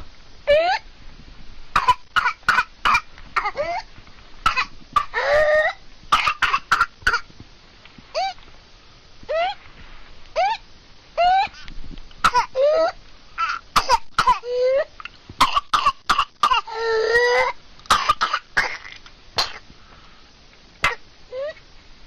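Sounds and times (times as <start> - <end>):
child coughing: 1.8 - 3.8, 4.5 - 5.4, 6.2 - 7.3, 12.2 - 12.7, 13.4 - 14.5, 15.4 - 19.6.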